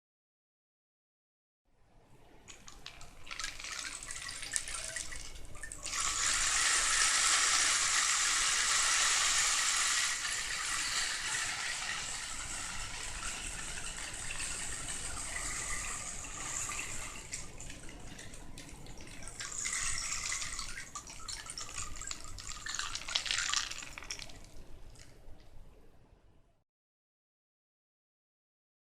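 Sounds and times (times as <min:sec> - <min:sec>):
rain stick pellets hissing: 0:05.8 - 0:17.6, 0:19.3 - 0:24.4.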